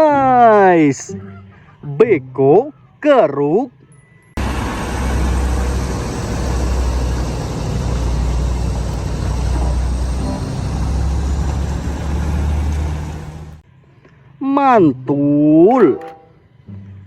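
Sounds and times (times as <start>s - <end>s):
heavy vehicle engine running: 4.4s - 13.6s.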